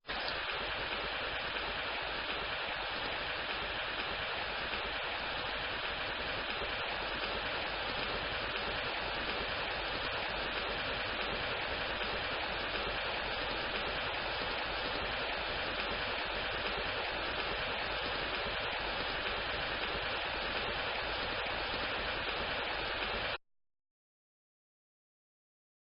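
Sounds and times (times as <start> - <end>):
steady rainfall hiss: 0.0 - 23.4.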